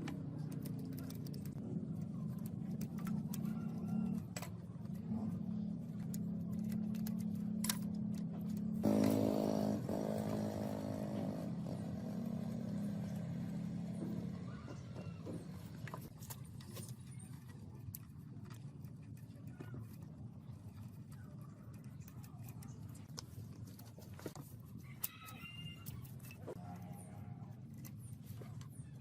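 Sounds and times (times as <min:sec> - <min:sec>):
machine humming: 0:08.7 - 0:14.5.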